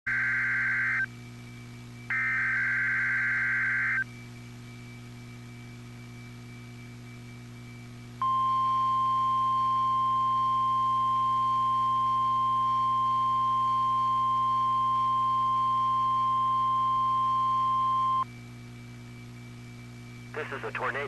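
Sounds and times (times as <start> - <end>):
warbling data tones: 0.1 - 1.1, 2.0 - 4.2
faint steady hum: 0.1 - 21.0.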